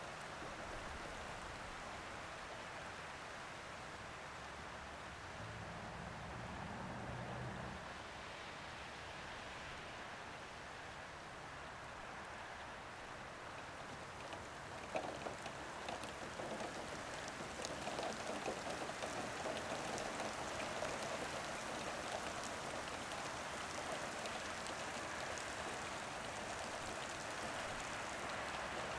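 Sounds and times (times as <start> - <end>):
heavy rain hiss: 0.0 - 28.9
running water: 13.2 - 28.9.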